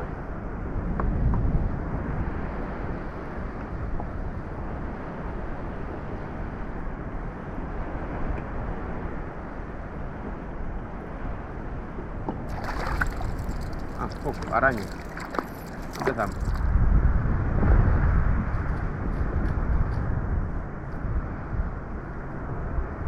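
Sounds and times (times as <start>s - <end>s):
wind on microphone: 0.0s - 9.2s, 12.4s - 23.0s
water rumbling: 12.5s - 16.8s.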